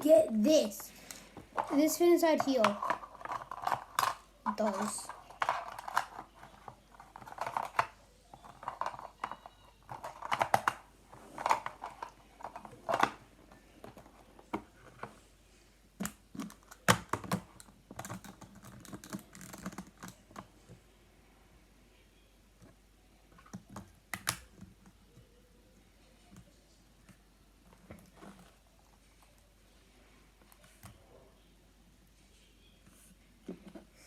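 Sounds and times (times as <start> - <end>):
plastic cubes clicking and clattering: 1.1 - 13.2, 16.0 - 20.5.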